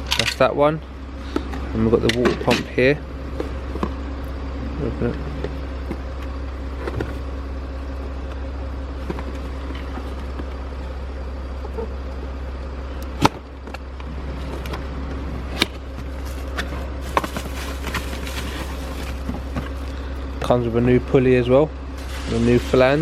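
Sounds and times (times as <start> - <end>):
steady low hum: 0.0 - 23.0
packaging rustling: 15.7 - 20.1.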